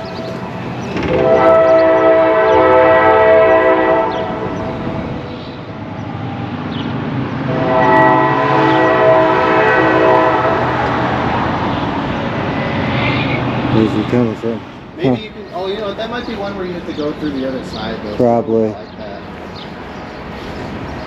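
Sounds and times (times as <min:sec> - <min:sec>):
train rumbling: 0:00.0 - 0:21.0
locomotive air horn: 0:01.0 - 0:05.3, 0:07.5 - 0:11.1.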